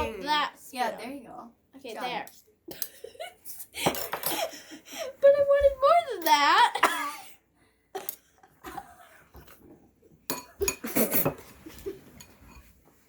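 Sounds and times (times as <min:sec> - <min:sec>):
spoon clinking against a bowl: 0:10.3 - 0:11.4.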